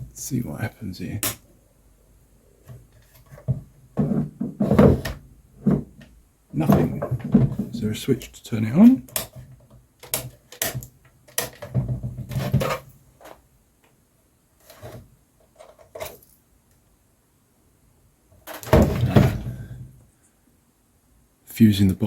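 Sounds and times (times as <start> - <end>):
tool handling clicks and knocks: 1.2 - 1.5, 2.6 - 7.9, 9.0 - 14.0, 14.6 - 16.4.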